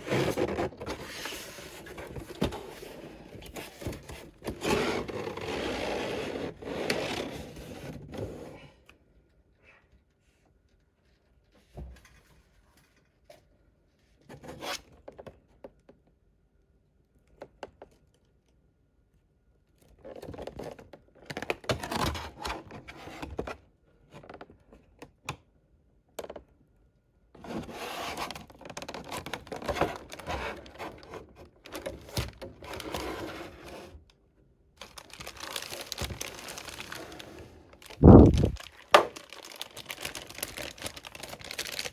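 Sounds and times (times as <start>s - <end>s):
packaging clicks and knocks: 34.8s - 37.0s, 38.3s - 41.9s
packaging crinkling and tearing: 34.8s - 41.9s.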